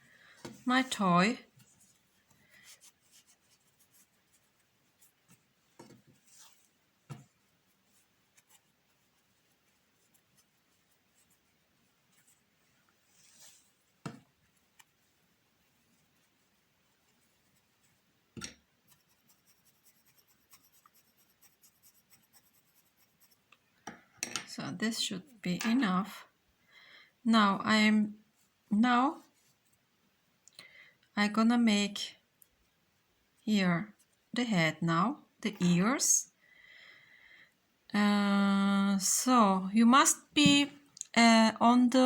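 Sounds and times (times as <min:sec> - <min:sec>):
soft rustling: 0:00.0 - 0:23.6, 0:28.2 - 0:29.9.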